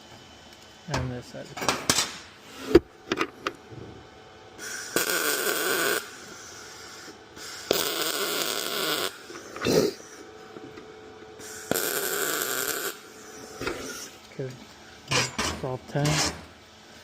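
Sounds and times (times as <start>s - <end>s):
welding arc crackling: 4.6s - 9.4s, 11.4s - 13.1s.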